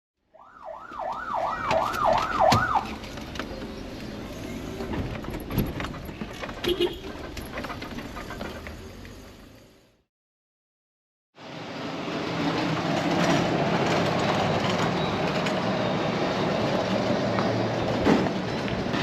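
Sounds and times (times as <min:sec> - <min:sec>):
street noise: 0:00.2 - 0:10.0, 0:11.4 - 0:19.0
electronic siren yelping: 0:00.4 - 0:02.9.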